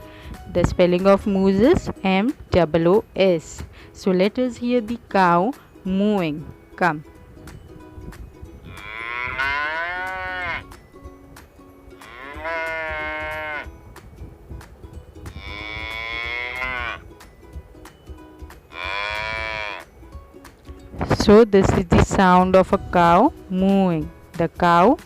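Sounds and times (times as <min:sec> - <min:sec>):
cow mooing: 0:08.6 - 0:10.8, 0:12.0 - 0:13.7, 0:15.2 - 0:17.0, 0:18.7 - 0:19.9.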